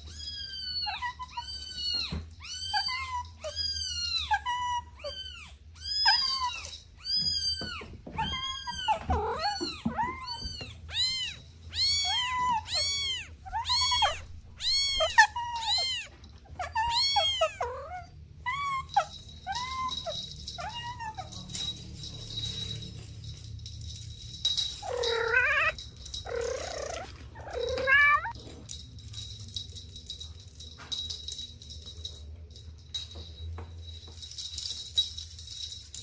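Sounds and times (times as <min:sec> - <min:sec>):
kittens meowing: 0:00.0 - 0:21.8, 0:24.8 - 0:28.4.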